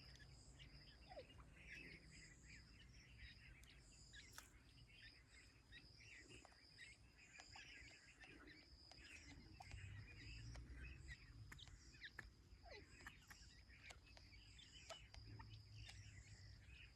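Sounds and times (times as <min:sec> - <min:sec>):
chicks cheeping: 0:00.0 - 0:16.9
light clicks: 0:03.6 - 0:04.6.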